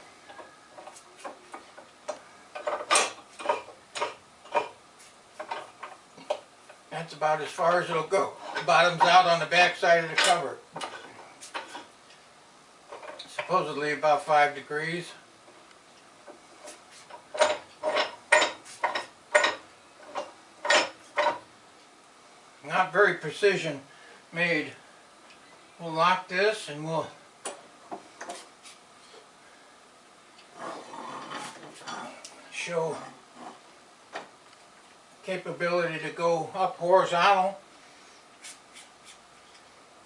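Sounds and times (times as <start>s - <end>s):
metal vise clicks: 17.1s - 21.4s.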